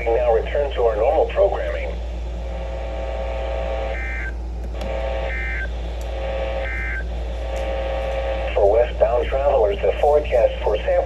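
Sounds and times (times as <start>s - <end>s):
steady buzzing hum: 0.0s - 11.0s
shrill two-tone data bursts: 5.0s - 7.1s.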